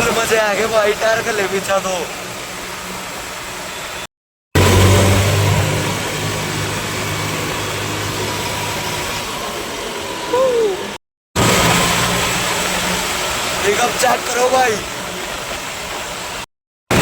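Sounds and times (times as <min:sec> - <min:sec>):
tractor diesel engine running: 0:04.6 - 0:10.2.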